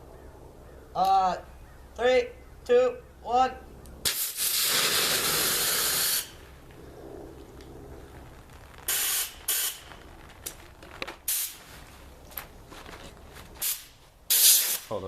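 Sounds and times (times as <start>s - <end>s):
compressed air blasts from hose: 4.0s - 6.4s, 8.9s - 9.9s, 11.3s - 11.7s, 13.6s - 15.0s.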